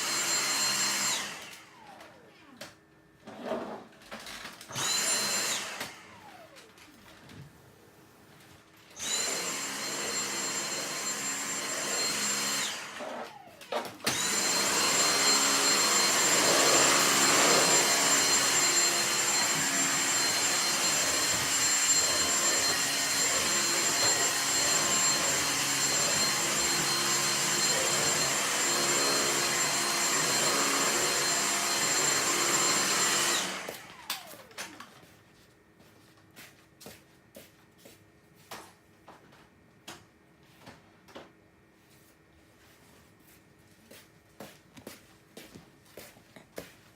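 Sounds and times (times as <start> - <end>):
vacuum cleaner running: 0.0 - 35.9.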